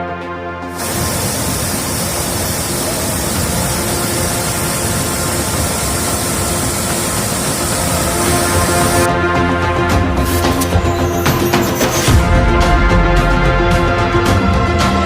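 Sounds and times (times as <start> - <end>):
loud white noise rushing: 0.8 - 9.1.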